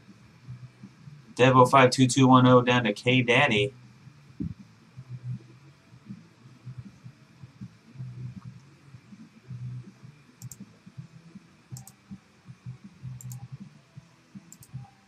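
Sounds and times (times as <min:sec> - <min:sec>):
uneven low thumping: 0:04.4 - 0:04.6
computer mouse double clicks: 0:10.4 - 0:10.6.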